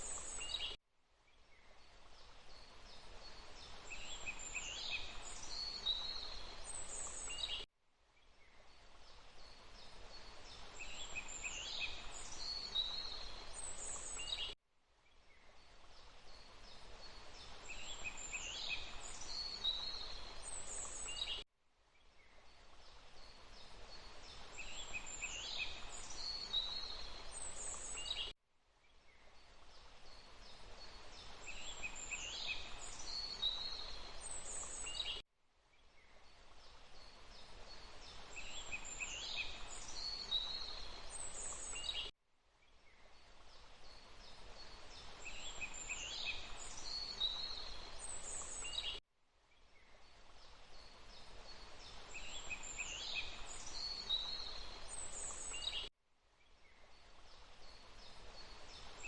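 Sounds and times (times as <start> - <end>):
birds singing: 51.9 - 55.9.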